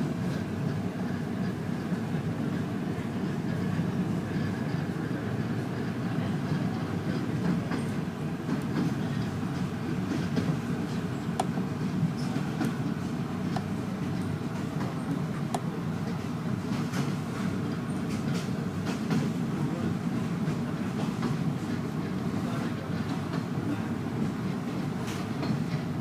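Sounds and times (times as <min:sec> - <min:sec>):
passenger train rumble: 0:00.0 - 0:26.0.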